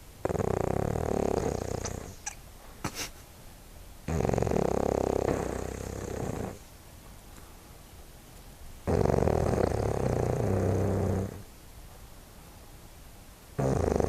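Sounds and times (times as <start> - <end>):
rattling snore: 0.2 - 2.4, 4.1 - 6.6, 8.9 - 11.5, 13.6 - 14.0.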